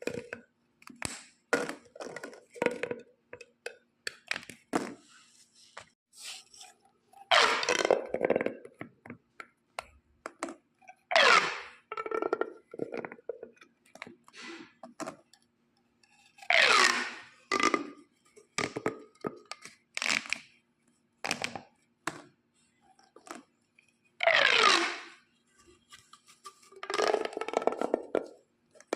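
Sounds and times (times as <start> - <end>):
plastic pop tubes crackling: 26.8 - 28.9.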